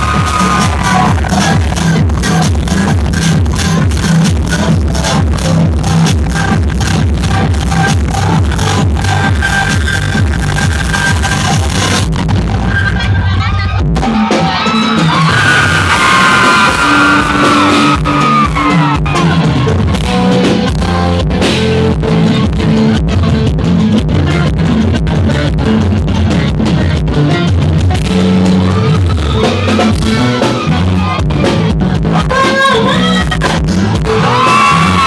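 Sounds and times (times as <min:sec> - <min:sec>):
steady drum beat: 0:00.0 - 0:12.6, 0:13.8 - 0:35.0
live band playing: 0:00.0 - 0:35.0
lead singer singing: 0:32.1 - 0:35.0.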